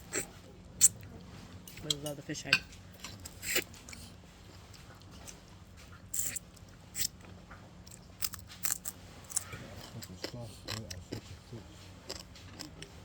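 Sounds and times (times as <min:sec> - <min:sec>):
mouth smacks and chewing: 0:12.1 - 0:13.0.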